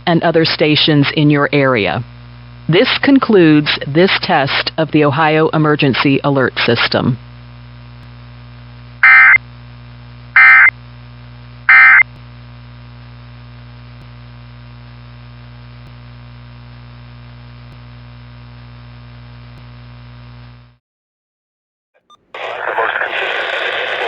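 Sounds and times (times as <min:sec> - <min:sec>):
digital data tone bursts: 0:09.0 - 0:09.4, 0:10.4 - 0:10.7, 0:11.7 - 0:12.0.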